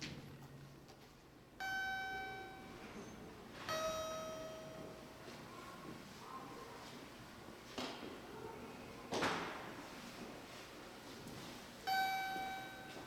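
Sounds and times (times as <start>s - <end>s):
two-tone chime: 1.6s - 5.2s, 11.9s - 13.0s.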